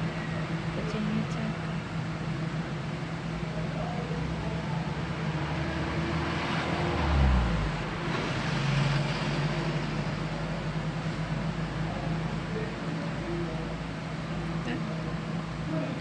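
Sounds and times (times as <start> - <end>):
road traffic engine hum: 0.0 - 16.0
vehicle passing close: 4.2 - 11.0.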